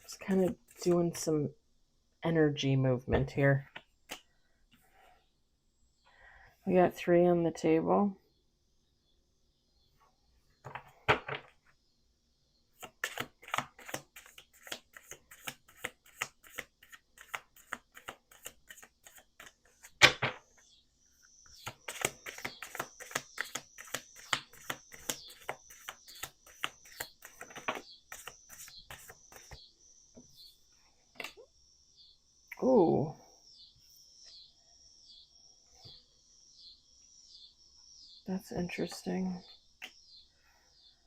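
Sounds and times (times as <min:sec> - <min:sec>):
cards being shuffled: 0:12.8 - 0:20.0, 0:21.6 - 0:29.6.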